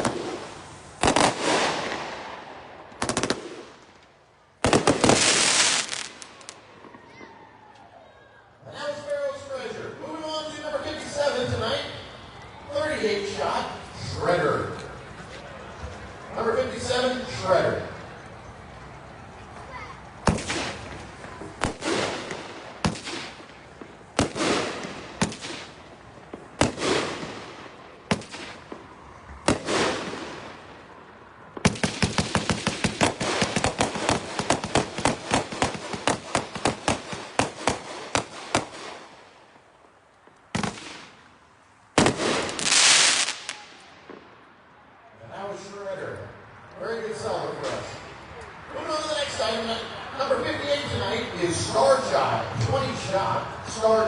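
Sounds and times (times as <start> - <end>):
fireworks crackling: 0.0 - 7.3, 8.8 - 44.8
fireworks shots: 0.0 - 7.4, 20.2 - 44.6.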